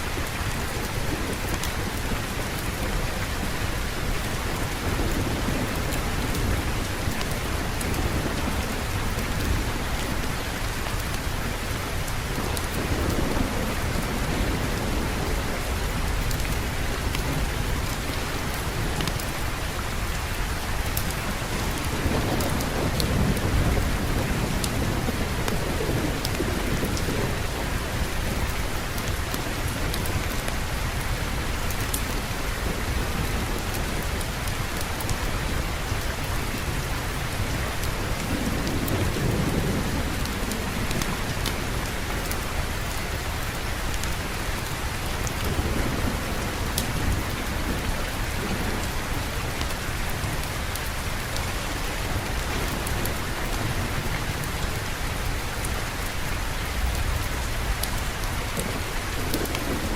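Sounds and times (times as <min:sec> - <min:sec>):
heavy rain falling: 0:00.0 - 0:59.9
distant thunder rumbling: 0:04.4 - 0:29.2.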